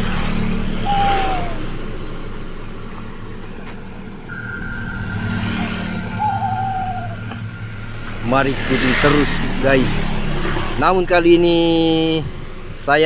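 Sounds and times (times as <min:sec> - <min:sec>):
vehicle engine humming: 0:00.0 - 0:10.8
short falling whistle-like tone: 0:04.3 - 0:08.4
steady high tone: 0:04.3 - 0:09.0.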